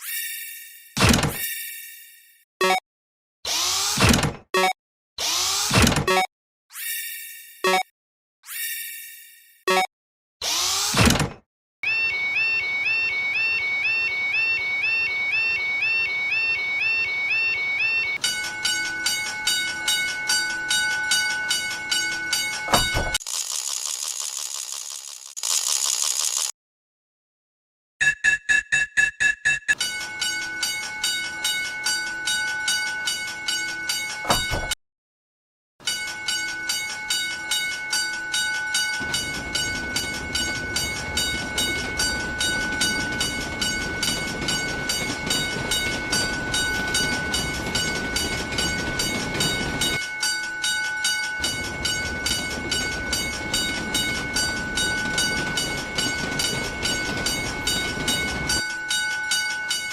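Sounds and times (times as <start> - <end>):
level-crossing alarm ringing: 11.8 - 23.2, 29.7 - 34.8, 35.9 - 59.9
passing train rumble: 39.0 - 58.7.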